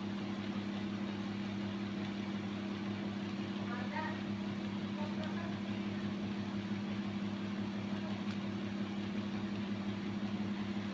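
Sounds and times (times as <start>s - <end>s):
low mechanical hum: 0.0s - 10.9s.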